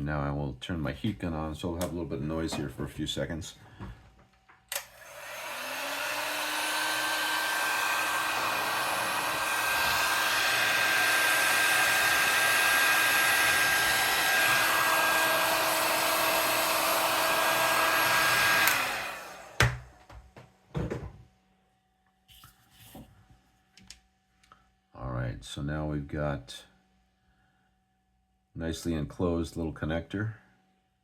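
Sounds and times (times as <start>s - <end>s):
heat gun blowing: 4.7s - 20.0s.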